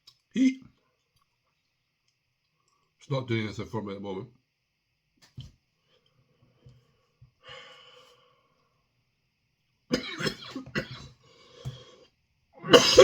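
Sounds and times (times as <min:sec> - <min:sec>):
man coughing: 0:09.9 - 0:11.1, 0:12.6 - 0:13.0.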